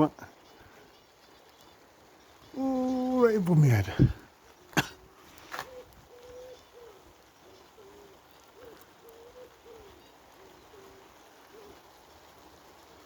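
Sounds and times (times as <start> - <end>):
pigeon cooing: 3.9 - 12.9.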